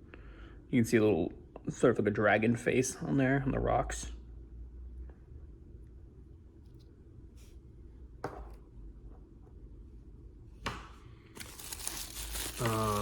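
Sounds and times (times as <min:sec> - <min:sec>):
plastic wrapping crinkling: 0:11.4 - 0:13.0.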